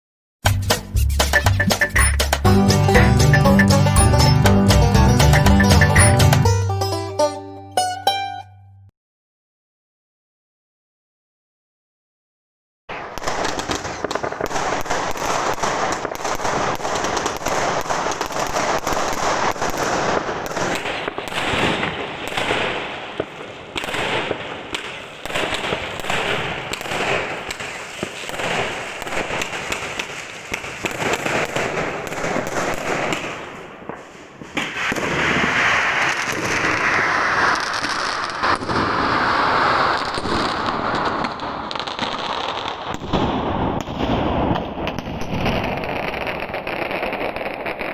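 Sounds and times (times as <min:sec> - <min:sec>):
fireworks bangs and crackles: 0:12.9 - 0:47.9.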